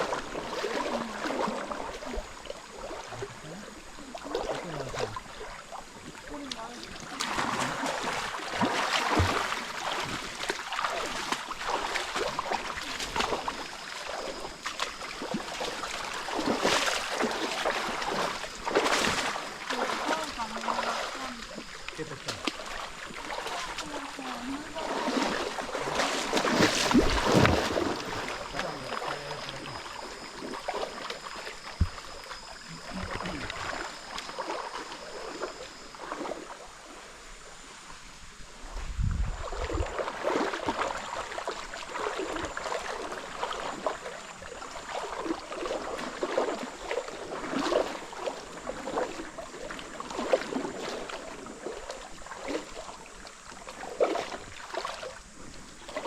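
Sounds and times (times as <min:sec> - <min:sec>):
water splashing and sloshing: 0:00.0 - 0:56.0
wind buffeting microphone: 0:38.7 - 0:39.9.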